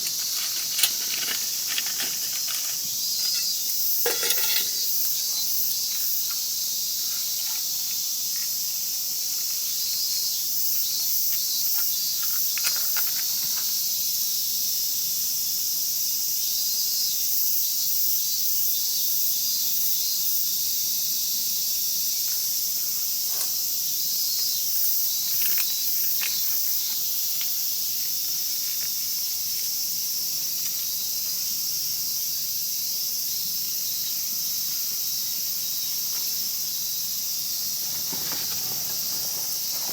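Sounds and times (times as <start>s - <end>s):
wood fire crackling: 0.0s - 3.4s, 37.8s - 39.9s
insects chirping: 0.0s - 39.9s.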